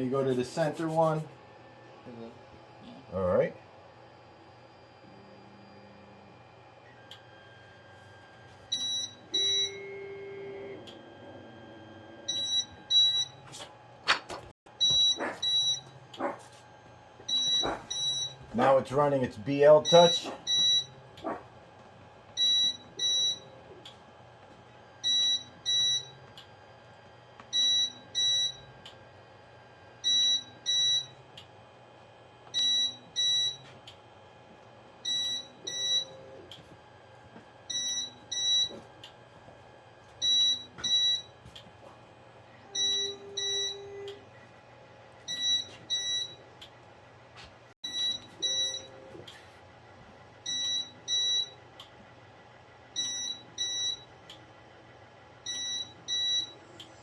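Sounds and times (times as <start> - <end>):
printer high-pitched tones: 6.8 - 13.5, 14.8 - 16.0, 17.3 - 21.0, 22.4 - 23.6, 25.0 - 26.2, 30.0 - 31.2, 32.6 - 33.7, 35.1 - 36.5, 37.7 - 38.8, 40.2 - 41.4, 42.6 - 44.3, 45.3 - 46.4, 47.8 - 49.5, 50.4 - 51.6, 53.0 - 54.2, 55.5 - 57.0.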